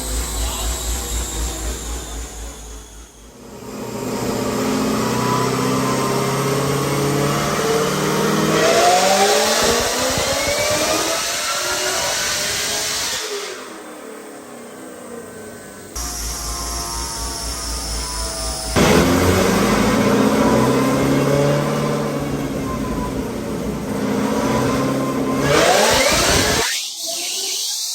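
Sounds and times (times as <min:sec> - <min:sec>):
car engine accelerating: 0:00.0 - 0:26.7
different engine sound: 0:00.0 - 0:27.9.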